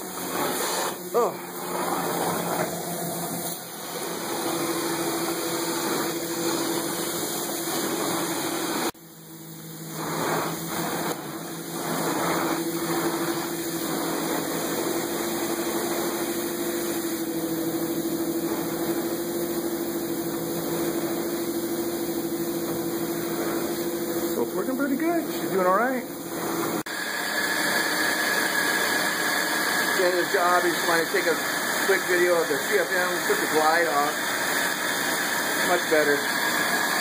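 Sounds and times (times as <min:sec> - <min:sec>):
carpet cleaner suction: 0:00.0 - 0:37.0.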